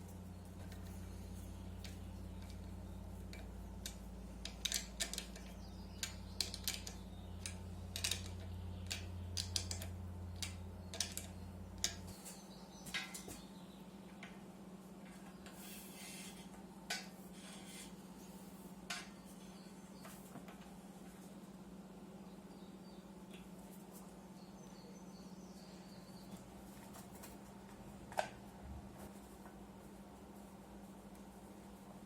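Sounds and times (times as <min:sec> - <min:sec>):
steady low hum: 0:00.0 - 0:32.0.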